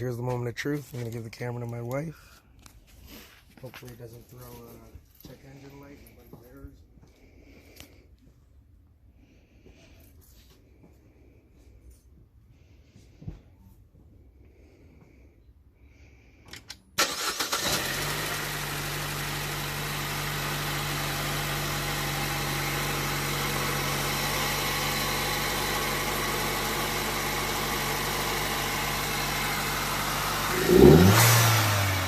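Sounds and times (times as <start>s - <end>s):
car engine cranking and idling: 16.4s - 32.0s.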